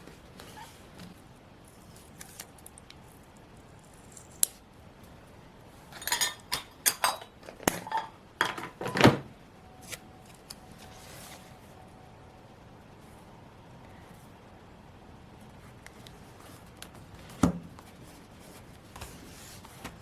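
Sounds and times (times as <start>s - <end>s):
paper rustling: 16.3s - 20.0s.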